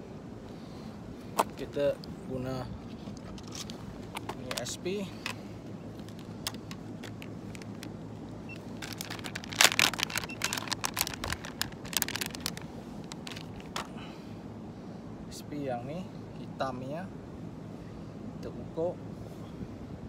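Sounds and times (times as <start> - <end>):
low background rumble: 0.0 - 20.0.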